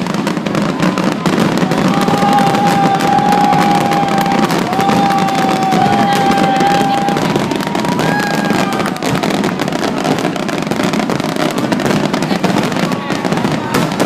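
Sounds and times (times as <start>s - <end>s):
firework whistling: 0.0s - 14.0s
fireworks crackling: 0.0s - 14.0s.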